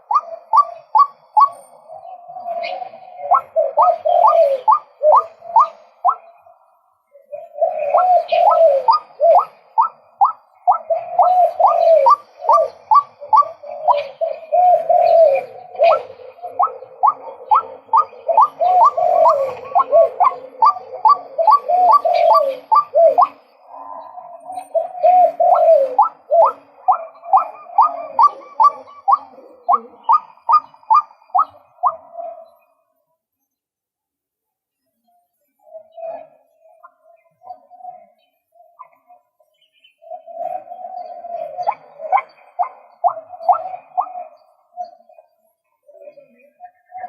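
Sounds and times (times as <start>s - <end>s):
waterhen calling: 0.0s - 6.6s, 7.3s - 23.6s, 24.4s - 32.6s, 40.4s - 45.2s.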